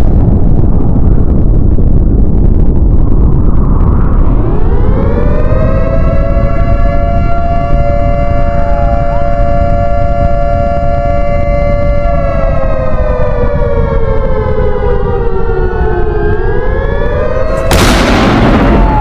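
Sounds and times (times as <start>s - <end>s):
grainy low rumble: 0.0s - 19.0s
two-note alarm siren: 3.8s - 19.0s.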